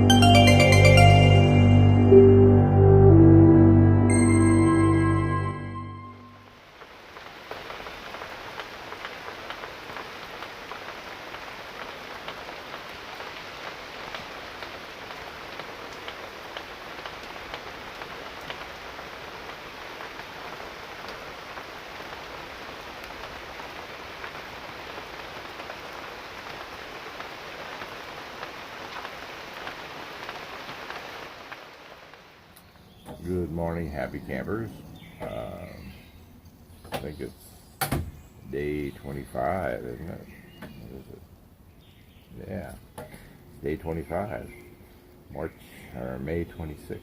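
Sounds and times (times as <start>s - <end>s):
rain falling: 0.0s - 47.0s
raindrop ticks: 6.7s - 33.7s.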